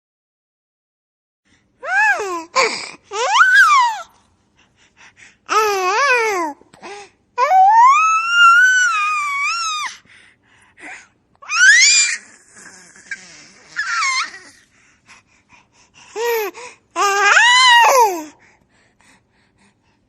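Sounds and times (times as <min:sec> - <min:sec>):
baby catching breath: 0:06.7 - 0:07.2, 0:14.5 - 0:17.0
baby laughing and squealing: 0:11.5 - 0:14.6.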